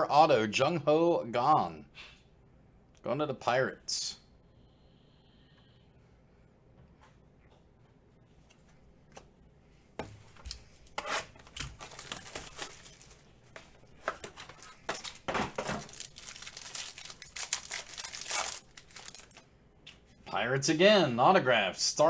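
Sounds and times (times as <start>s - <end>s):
card packaging crinkling and tearing: 10.8s - 19.4s.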